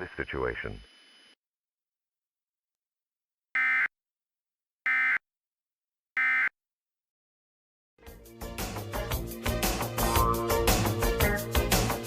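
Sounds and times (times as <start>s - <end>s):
music: 8.0s - 12.0s.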